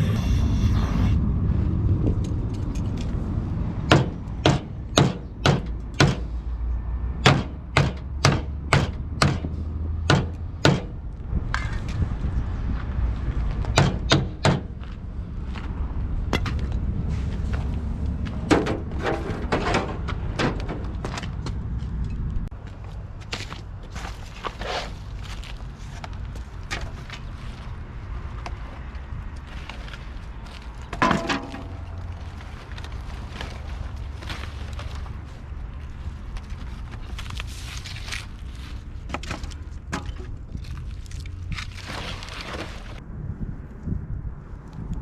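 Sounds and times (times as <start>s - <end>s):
low engine rumble: 0.0s - 24.1s, 25.2s - 41.6s
sharp knocks: 3.9s - 6.3s, 7.2s - 9.5s, 10.1s - 11.0s, 13.8s - 14.7s.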